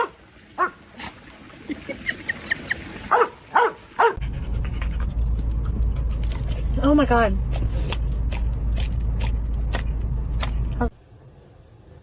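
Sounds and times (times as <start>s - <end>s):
dog yipping: 3.1s - 4.2s
low rumble: 4.2s - 12.0s.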